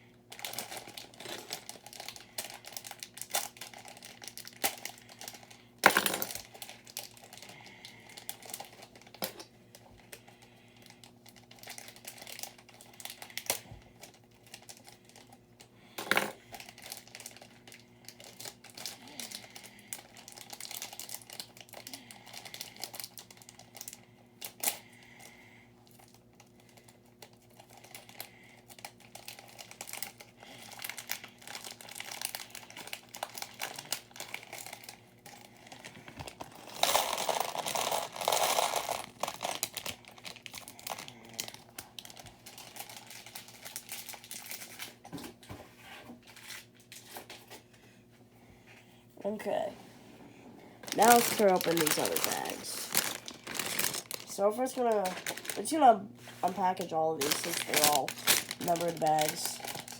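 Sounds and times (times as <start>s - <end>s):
plastic bricks clicking and rattling: 50.9s - 54.4s, 55.0s - 55.6s.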